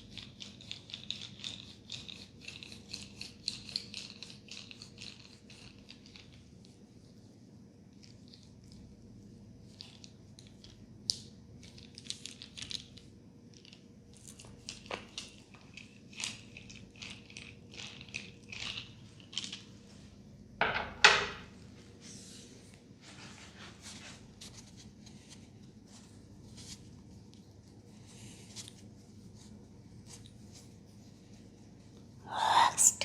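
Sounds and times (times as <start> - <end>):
hands rubbing hair and scalp: 22.0 - 32.0.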